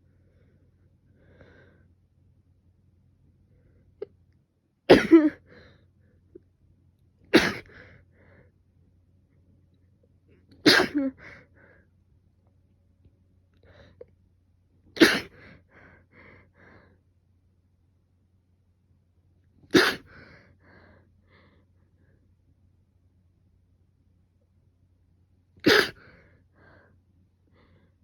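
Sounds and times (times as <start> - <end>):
person sneezing: 4.9 - 5.4, 7.3 - 7.8, 10.6 - 11.2, 15.0 - 15.5, 19.7 - 20.2, 25.6 - 26.1.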